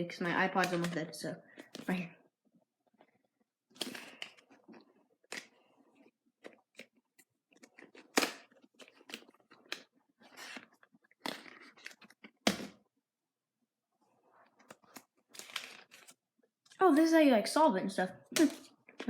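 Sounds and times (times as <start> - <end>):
plastic cube layers clicking: 0.4 - 1.9, 3.8 - 5.6, 6.4 - 12.8, 14.6 - 16.2
loud plastic snaps: 8.0 - 9.8.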